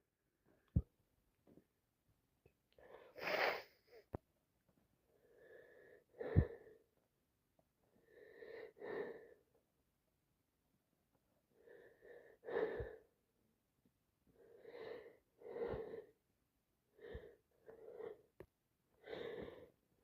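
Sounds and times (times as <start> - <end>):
woman sniffing: 3.1 - 3.8
breathy in-breaths: 5.2 - 6.8, 14.4 - 16.2, 19.0 - 19.8.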